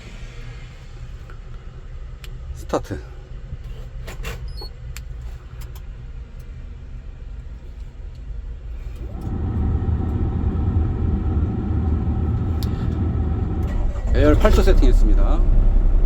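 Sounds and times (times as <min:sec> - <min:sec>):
diesel engine running: 0:08.9 - 0:16.0
low hum: 0:08.9 - 0:16.0.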